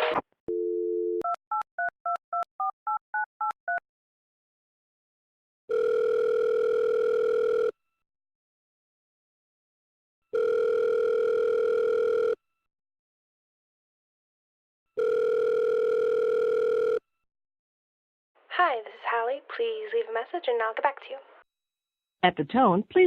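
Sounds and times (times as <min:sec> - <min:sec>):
phone ringback tones: 0:05.7 - 0:07.8, 0:10.3 - 0:12.4, 0:15.0 - 0:17.0.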